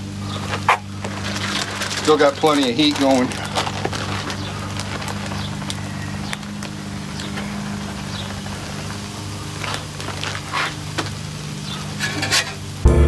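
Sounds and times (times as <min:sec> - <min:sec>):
low engine-like hum: 0:00.0 - 0:12.9
metal chopper scraping a griddle: 0:11.8 - 0:12.8.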